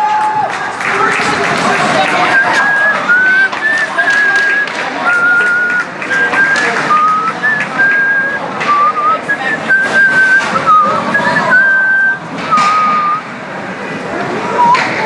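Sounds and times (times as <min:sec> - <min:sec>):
crowd cheering and clapping: 0:00.0 - 0:13.4
shrill whistled notes: 0:01.7 - 0:13.3.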